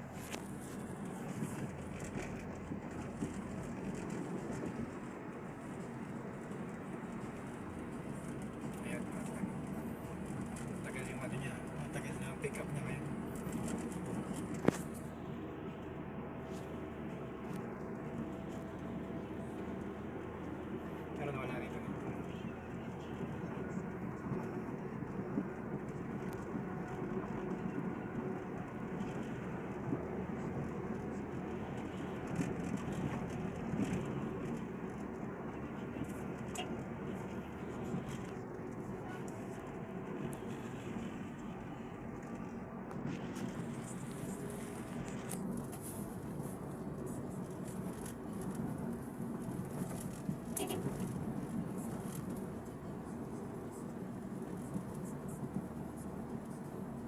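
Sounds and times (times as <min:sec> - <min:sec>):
car engine rumble: 0:00.0 - 0:57.0.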